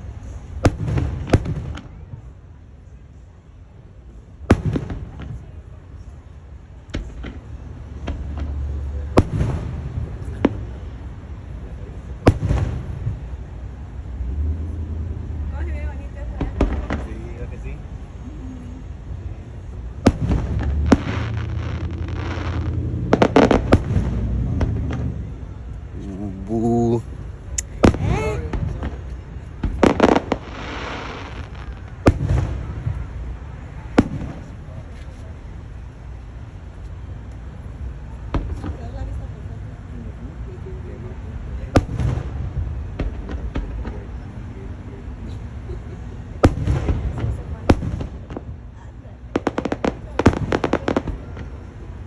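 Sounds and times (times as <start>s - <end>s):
steady low rumble: 0.0s - 52.0s
firework bangs with echo: 0.6s - 2.3s, 4.4s - 5.5s, 6.9s - 10.8s, 12.2s - 13.4s, 16.3s - 17.6s, 20.0s - 25.4s, 27.7s - 34.8s, 41.7s - 44.2s, 46.4s - 48.6s, 49.3s - 51.6s
crackling hiss: 16.4s - 38.7s.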